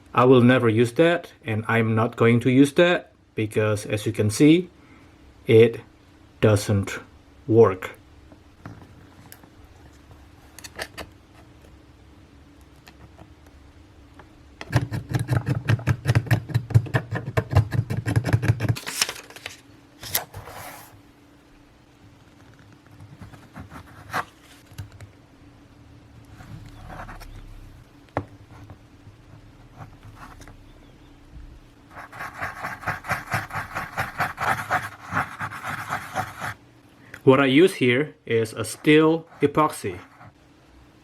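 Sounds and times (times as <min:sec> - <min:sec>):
clicks and taps: 0:12.6 - 0:18.8.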